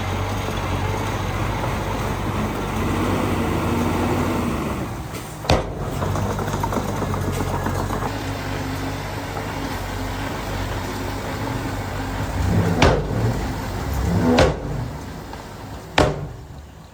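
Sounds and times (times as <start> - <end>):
heavy machinery diesel engine: 0.0 - 16.9
sharp knocks: 5.4 - 7.2, 12.6 - 13.5, 14.3 - 15.0, 16.0 - 16.5.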